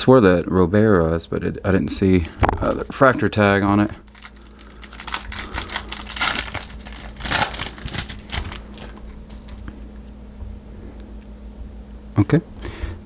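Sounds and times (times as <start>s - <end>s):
foil wrapper crinkling and tearing: 2.6s - 9.8s.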